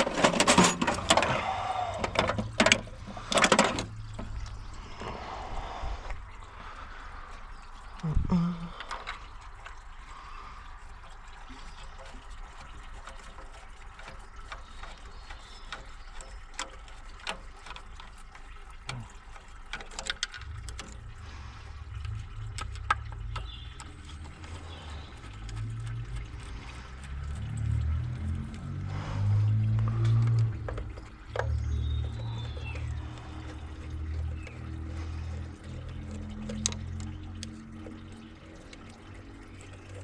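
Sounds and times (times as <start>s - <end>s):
hand tools clicking and clinking: 0.0s - 3.9s
low hum: 20.2s - 40.0s.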